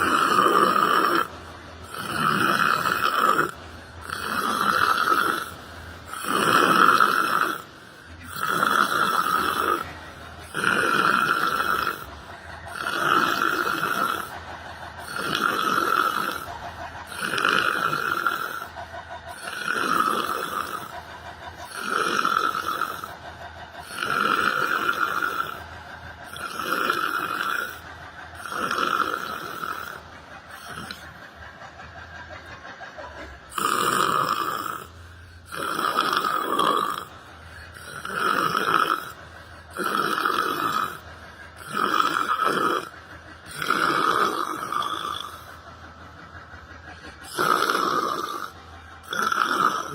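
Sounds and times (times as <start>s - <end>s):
person snoring: 0.0s - 21.0s, 21.6s - 23.2s, 23.8s - 25.6s, 26.2s - 31.1s, 33.5s - 45.5s, 47.2s - 49.9s.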